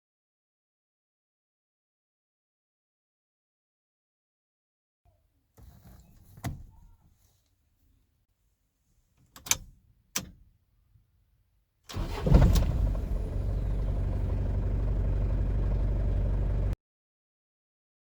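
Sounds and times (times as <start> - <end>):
diesel engine cranking and idling: 11.9 - 16.8.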